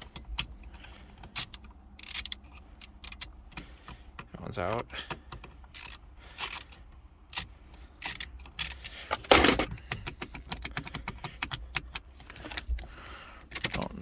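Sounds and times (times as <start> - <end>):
metal tools clinking and rattling: 1.3 - 3.7, 5.8 - 6.7, 7.3 - 9.7.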